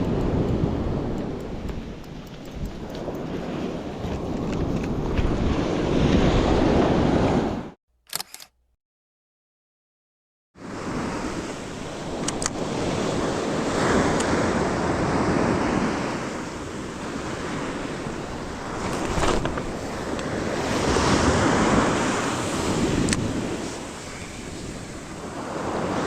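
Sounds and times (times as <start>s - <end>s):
wind on microphone: 0.0s - 7.8s, 10.6s - 26.0s
short click: 8.1s - 8.6s
surf washing on shore: 10.6s - 26.0s.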